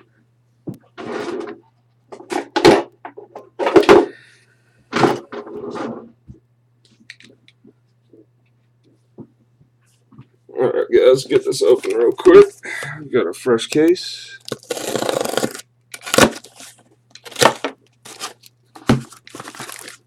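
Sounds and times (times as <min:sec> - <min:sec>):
packaging rustling: 0:14.5 - 0:20.0.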